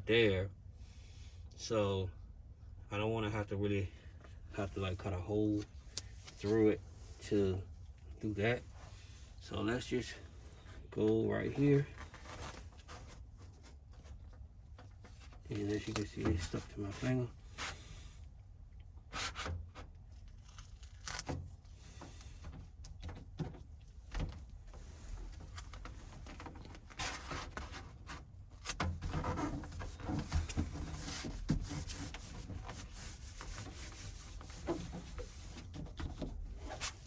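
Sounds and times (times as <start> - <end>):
mat rubbing and scraping: 10.4 - 14.2, 24.8 - 37.0.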